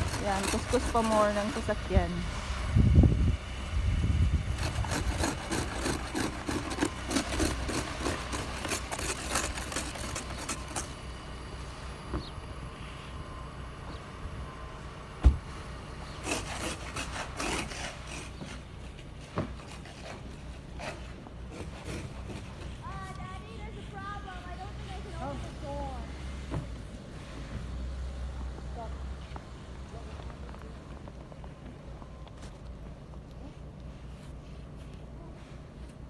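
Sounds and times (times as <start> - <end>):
brush scraping snow off car: 0.0 - 2.4, 4.4 - 11.2, 16.1 - 26.1, 33.4 - 36.0
thump: 15.2 - 15.5.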